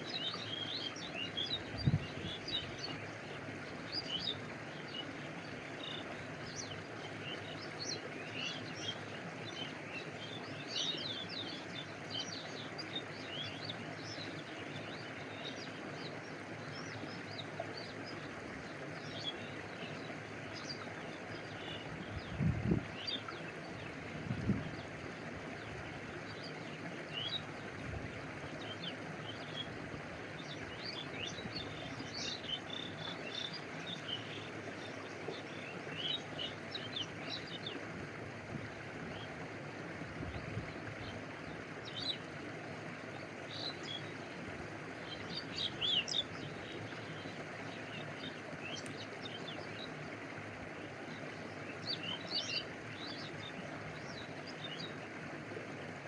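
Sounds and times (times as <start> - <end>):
stream water flowing: 0.0 - 56.0
small birds chirping: 30.4 - 37.8.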